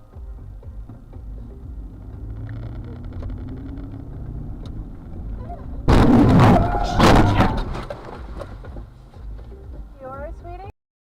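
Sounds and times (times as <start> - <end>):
car engine and road rumble: 0.0 - 10.7
vehicle collision crash: 5.8 - 8.8.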